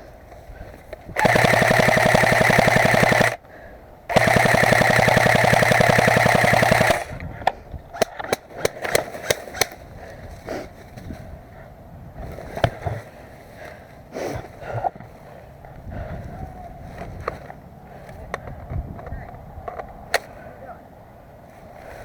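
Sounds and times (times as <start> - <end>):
airsoft gun bursts: 1.2 - 3.4, 4.1 - 7.2.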